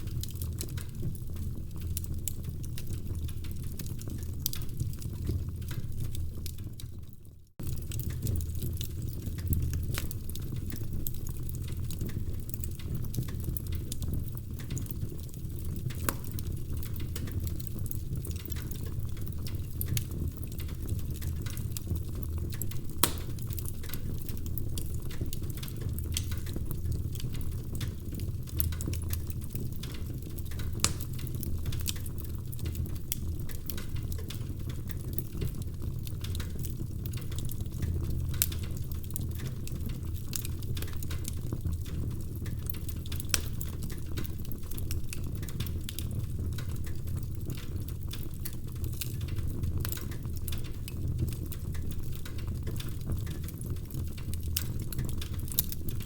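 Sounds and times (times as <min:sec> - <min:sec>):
wood fire crackling: 0:00.0 - 0:56.0
loud pops from fire: 0:22.9 - 0:24.3, 0:30.7 - 0:31.4.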